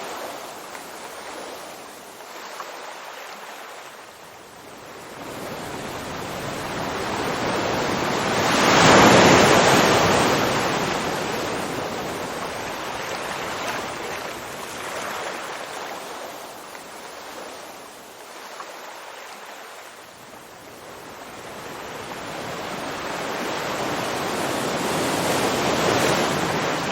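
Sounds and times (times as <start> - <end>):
ocean waves crashing: 4.9 - 20.0, 20.8 - 26.9.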